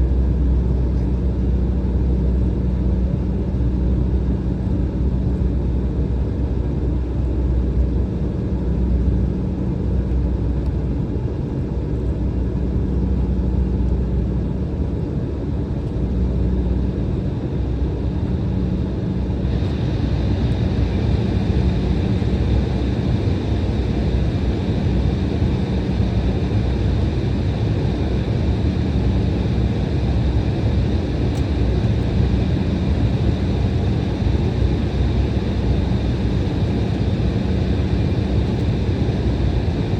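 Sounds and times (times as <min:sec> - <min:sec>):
jet cabin low rumble: 0:00.0 - 0:39.9
hiss with faint whine: 0:19.4 - 0:39.9.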